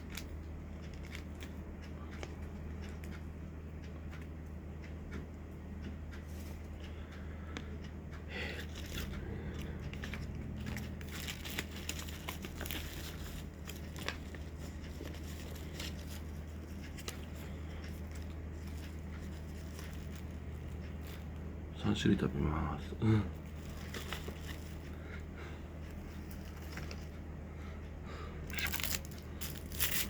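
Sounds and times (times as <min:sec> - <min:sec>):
steady low hum: 0:00.0 - 0:30.0
plastic packaging crinkling: 0:10.0 - 0:17.3, 0:23.5 - 0:24.9, 0:28.5 - 0:30.0.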